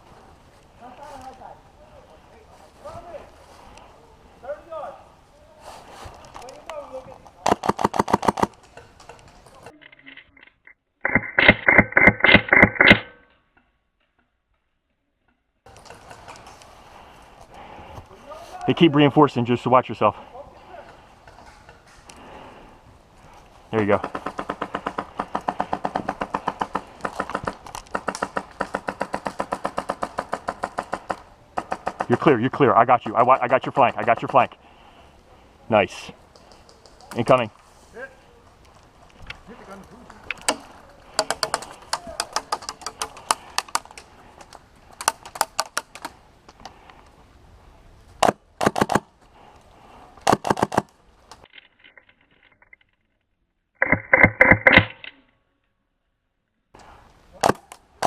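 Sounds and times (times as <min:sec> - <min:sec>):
airsoft guns firing: 0:07.4 - 0:08.5, 0:24.0 - 0:32.3, 0:48.2 - 0:49.1, 0:50.2 - 0:50.9.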